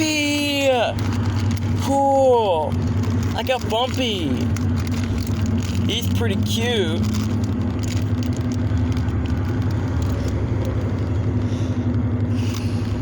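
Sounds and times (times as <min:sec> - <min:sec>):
car engine humming: 0:00.0 - 0:13.0.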